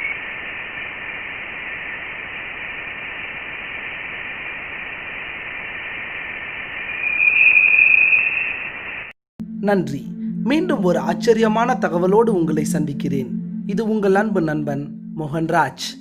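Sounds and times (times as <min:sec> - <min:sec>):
radio-like static hiss: 0:00.0 - 0:09.2
faint high tone: 0:09.4 - 0:16.0.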